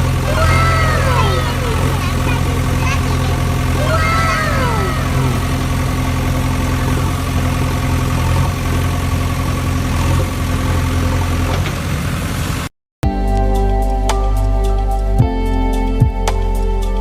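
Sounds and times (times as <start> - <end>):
vehicle engine idling: 0.0 - 12.7.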